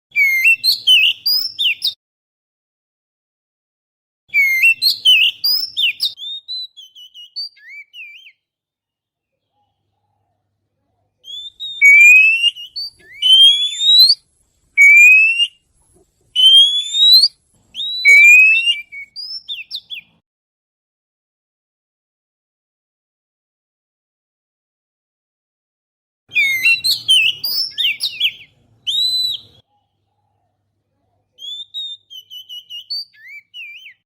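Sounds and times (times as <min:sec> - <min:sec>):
bird chirps and whistles: 0:00.1 - 0:02.0, 0:04.3 - 0:08.5, 0:11.2 - 0:14.2, 0:14.8 - 0:15.6, 0:16.3 - 0:20.1, 0:26.3 - 0:29.6, 0:31.4 - 0:34.0
loud rising whistled bird notes: 0:04.4 - 0:08.4, 0:11.3 - 0:14.2, 0:14.8 - 0:15.6, 0:16.4 - 0:20.1, 0:26.3 - 0:29.6.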